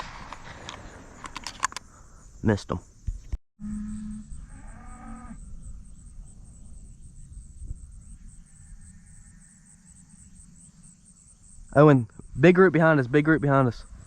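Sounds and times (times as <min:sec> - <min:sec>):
insects chirping: 0:00.0 - 0:14.0
cow mooing: 0:03.6 - 0:05.4.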